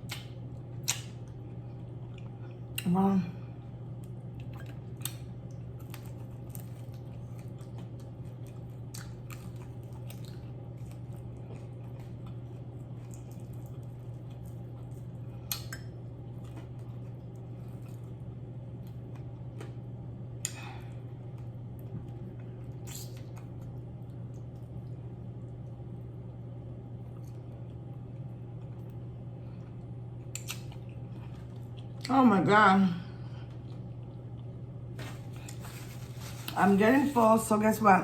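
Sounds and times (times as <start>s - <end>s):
steady low hum: 0.0s - 38.0s
person chewing food: 4.0s - 25.6s, 27.0s - 32.1s, 33.4s - 36.6s.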